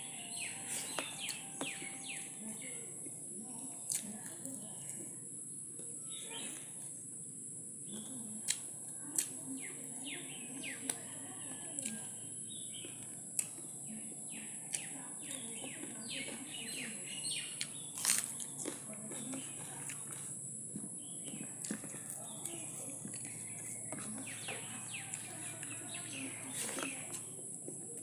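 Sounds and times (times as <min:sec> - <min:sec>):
birds chirping: 0:00.0 - 0:03.0, 0:06.0 - 0:06.7, 0:09.5 - 0:20.0, 0:21.0 - 0:27.4.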